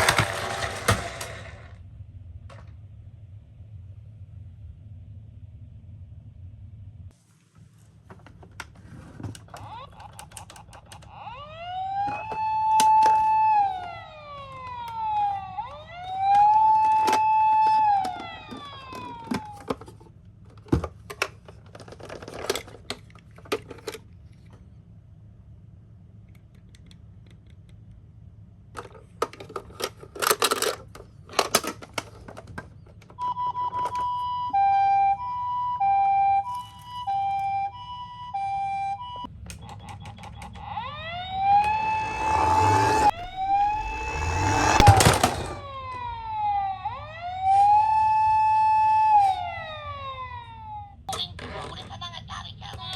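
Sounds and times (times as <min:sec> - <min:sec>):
toy siren wailing: 0:09.5 - 0:19.9, 0:33.2 - 0:43.0, 0:44.4 - 0:51.1
two-tone ambulance siren: 0:10.8 - 0:19.9, 0:33.2 - 0:51.1.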